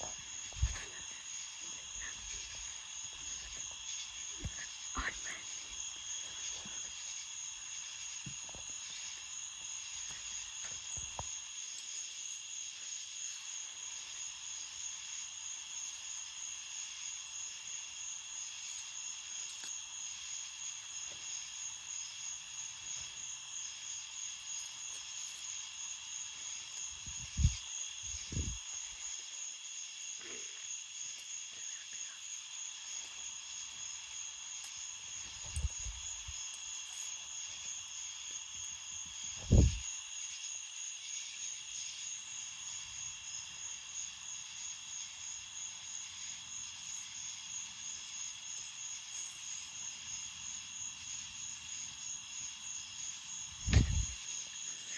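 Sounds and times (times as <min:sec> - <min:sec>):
insects trilling: 0:00.0 - 0:54.9
low thumps: 0:53.6 - 0:54.2.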